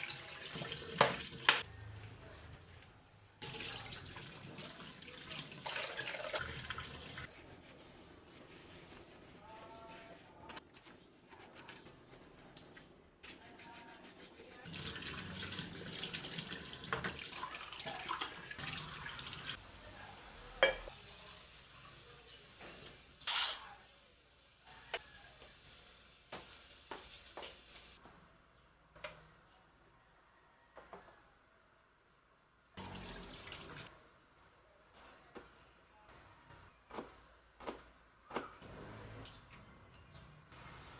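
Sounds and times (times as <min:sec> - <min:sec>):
tap water running into sink: 0:00.0 - 0:01.6, 0:03.4 - 0:07.2, 0:14.7 - 0:19.6, 0:32.8 - 0:33.9.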